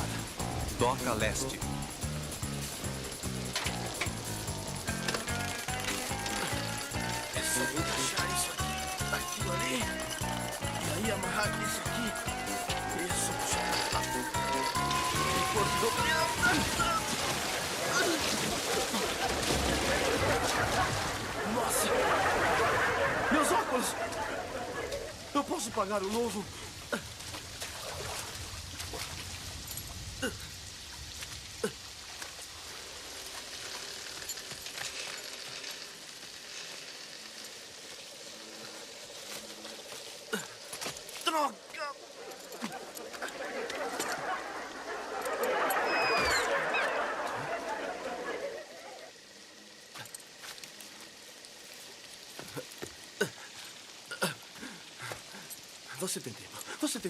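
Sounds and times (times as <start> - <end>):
heavy rain: 0.0 - 57.0
falling whistle-like glides: 45.5 - 49.0.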